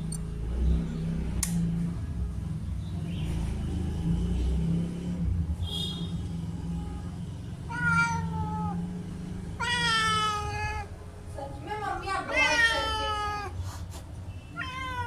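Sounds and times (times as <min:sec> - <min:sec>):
cat meowing: 0:06.6 - 0:11.0, 0:12.2 - 0:13.6, 0:14.5 - 0:15.0.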